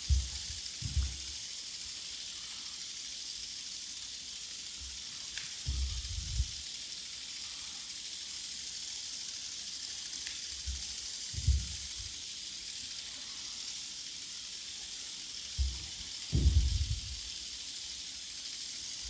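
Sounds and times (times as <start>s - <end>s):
high crackling hiss: 0.0s - 19.0s
low thumps: 5.7s - 6.5s, 11.4s - 11.8s, 15.6s - 17.2s.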